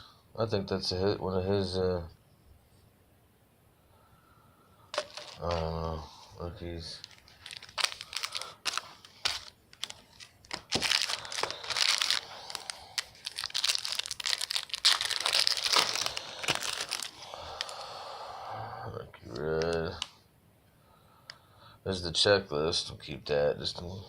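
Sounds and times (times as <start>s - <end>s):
wrapper crinkling and tearing: 4.9s - 5.9s, 6.8s - 17.8s.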